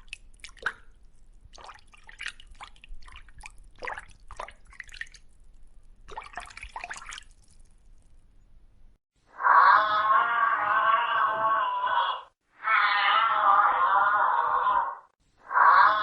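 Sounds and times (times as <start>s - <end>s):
water dripping: 0.0s - 9.0s.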